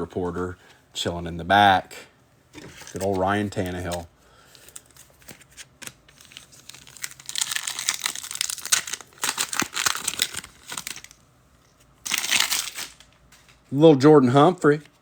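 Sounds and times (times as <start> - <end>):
foil wrapper crinkling: 2.8 - 11.2, 12.0 - 13.5.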